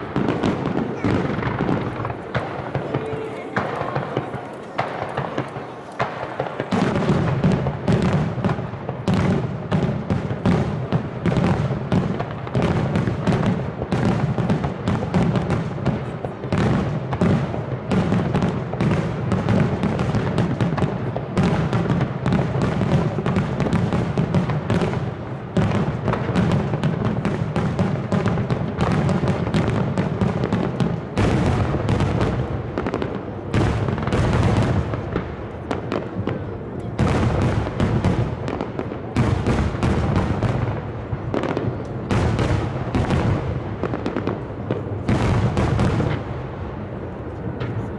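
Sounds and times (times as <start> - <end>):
firework shells bursting: 0.0 - 7.7
fireworks bursting and crackling: 0.0 - 47.9.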